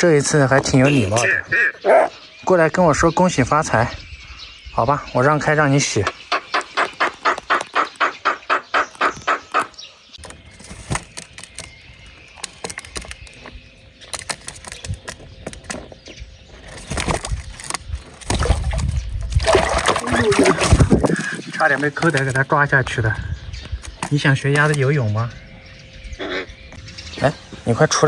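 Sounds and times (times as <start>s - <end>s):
birds splashing and flapping in water: 16.6s - 22.4s.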